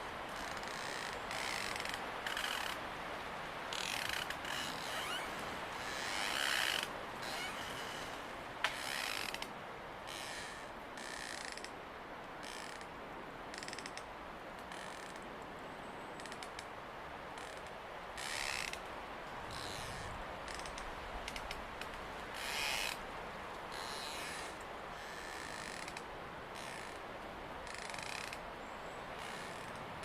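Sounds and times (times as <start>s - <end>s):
wind rushing with gusts: 16.6s - 23.8s.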